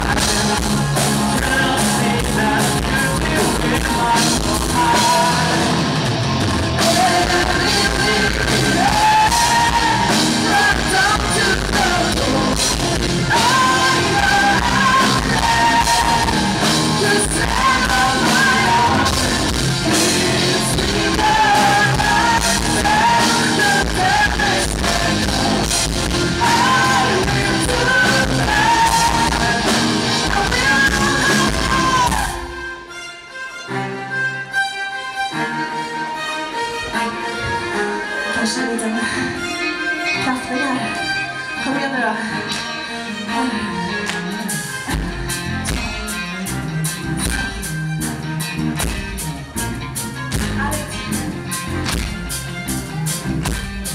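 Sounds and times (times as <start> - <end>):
lead singer singing: 0.0 - 32.8, 50.3 - 52.2
rock band playing: 0.0 - 53.9.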